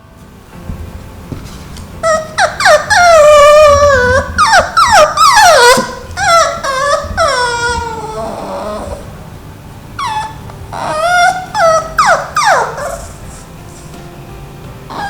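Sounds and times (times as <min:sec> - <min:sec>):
puppy whining: 0:01.6 - 0:09.2, 0:09.9 - 0:14.0.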